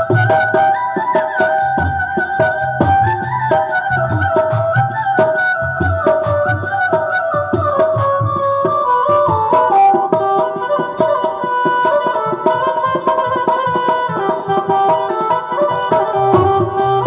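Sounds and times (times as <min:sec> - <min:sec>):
melody instrument playing: 0:00.0 - 0:11.5
hand drum rhythm: 0:00.0 - 0:17.0.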